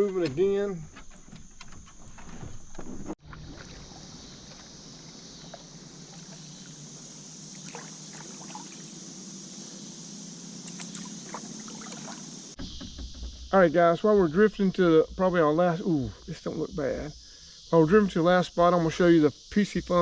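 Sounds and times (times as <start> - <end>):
high insect drone: 0.0 - 20.0
faint water sounds: 3.2 - 12.6.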